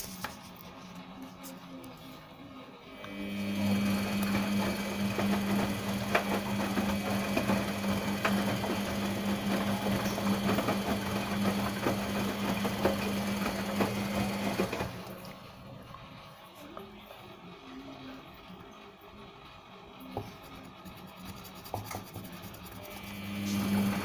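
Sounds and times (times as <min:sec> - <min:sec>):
washing machine motor hum: 0:00.0 - 0:24.0
wet laundry tumbling clicks: 0:03.7 - 0:15.3.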